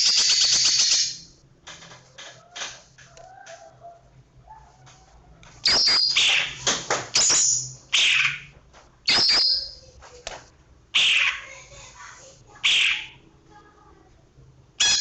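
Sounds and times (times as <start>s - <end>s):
bird singing rapid whistled song: 0.0s - 1.3s, 5.6s - 6.6s, 9.1s - 9.8s.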